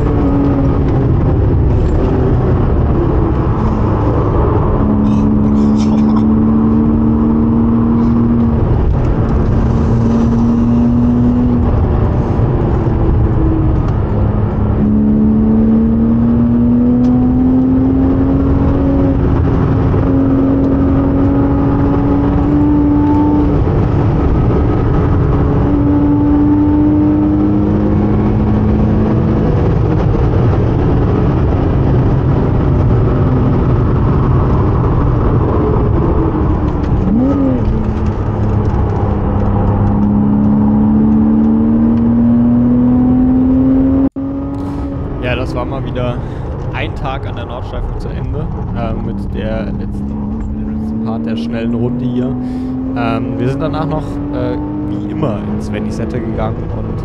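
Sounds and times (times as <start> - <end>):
car engine accelerating hard: 0.0 - 57.0
low road roar: 0.0 - 57.0.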